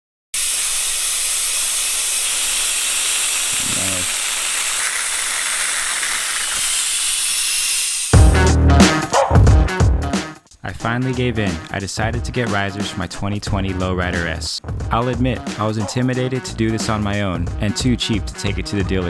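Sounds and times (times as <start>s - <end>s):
loud steady hiss: 0.4s - 9.1s
music: 8.2s - 19.0s.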